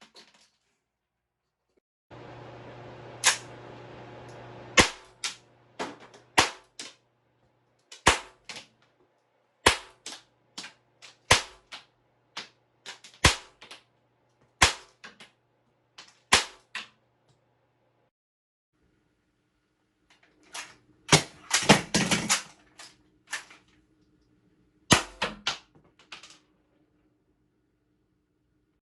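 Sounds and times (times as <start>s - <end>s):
toy gun firing caps: 7.9s - 8.7s, 9.6s - 13.8s, 16.0s - 16.9s, 20.5s - 22.6s, 24.9s - 26.2s.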